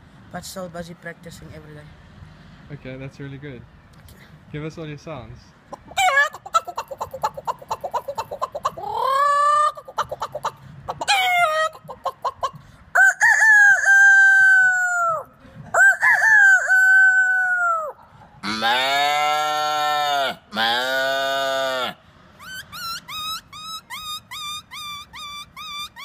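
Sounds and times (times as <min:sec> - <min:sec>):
man imitating chicken clucking: 0:05.7 - 0:26.0
man imitating rooster crows: 0:13.0 - 0:22.0.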